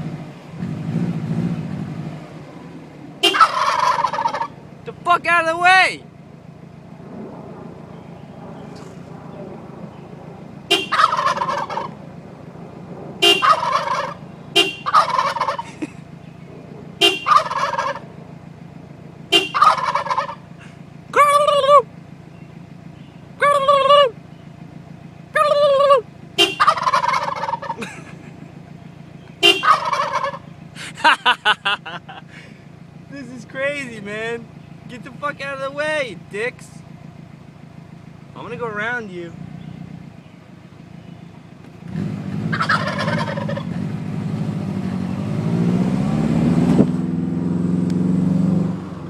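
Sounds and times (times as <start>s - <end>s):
constant low hum: 0.0s - 49.0s
car horn honks: 3.2s - 3.8s, 10.6s - 11.4s, 13.2s - 15.3s, 16.9s - 17.7s, 19.2s - 19.9s, 26.2s - 27.0s, 29.3s - 30.1s
turkeys gobbling: 3.2s - 4.6s, 10.7s - 12.0s, 13.2s - 16.0s, 17.0s - 18.1s, 19.4s - 21.9s, 23.4s - 24.2s, 25.4s - 32.5s, 42.5s - 43.7s.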